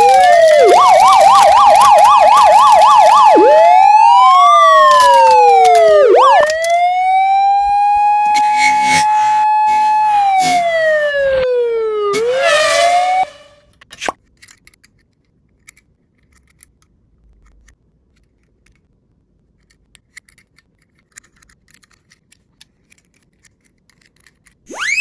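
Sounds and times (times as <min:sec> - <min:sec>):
toy car wheels clicking and rattling: 0:00.0 - 0:03.4, 0:04.4 - 0:06.8, 0:14.2 - 0:16.8, 0:19.6 - 0:24.7
rising whistle sound effect: 0:00.0 - 0:06.6, 0:08.3 - 0:11.4, 0:12.1 - 0:13.6, 0:24.7 - 0:25.0.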